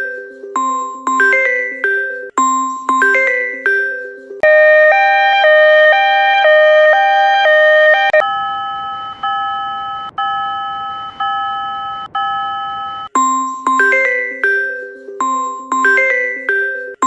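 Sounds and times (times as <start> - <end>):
low chime pattern: 0.0 - 4.3, 8.2 - 17.0
two-tone crossing clang: 8.2 - 14.2.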